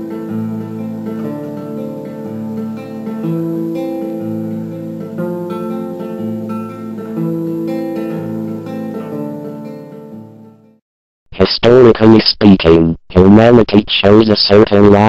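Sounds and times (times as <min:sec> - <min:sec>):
acoustic guitar slow chords: 0:00.0 - 0:10.8.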